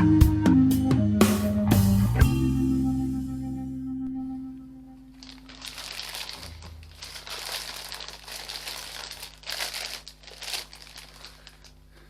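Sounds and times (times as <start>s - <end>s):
packaging crinkling and rustling: 5.2s - 12.0s.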